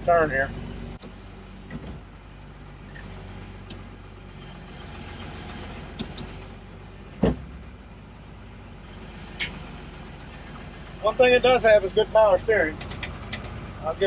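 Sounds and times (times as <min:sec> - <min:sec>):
tractor diesel engine running: 0:00.0 - 0:14.0
clicks and clunks: 0:01.0 - 0:02.1, 0:05.9 - 0:06.4, 0:12.8 - 0:13.7.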